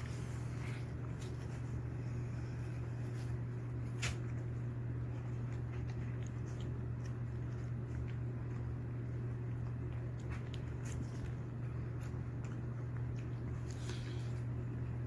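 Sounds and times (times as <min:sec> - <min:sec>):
steady low hum: 0:00.0 - 0:15.0
dog chewing and licking: 0:03.6 - 0:15.0.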